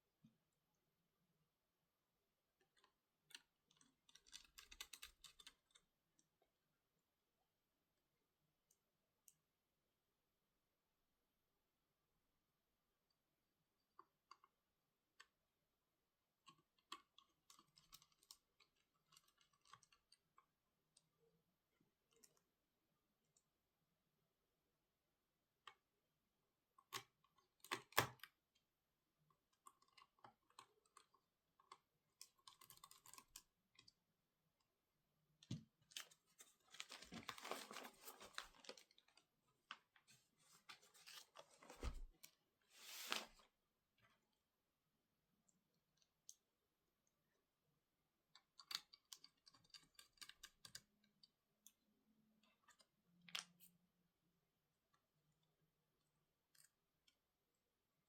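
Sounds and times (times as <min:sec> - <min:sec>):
laptop keys clicking: 0:03.7 - 0:05.8.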